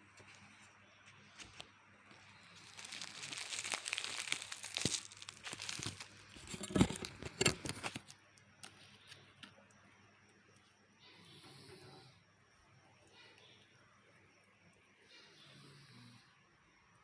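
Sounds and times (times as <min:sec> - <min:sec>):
packaging crinkling and rustling: 0:01.4 - 0:08.2.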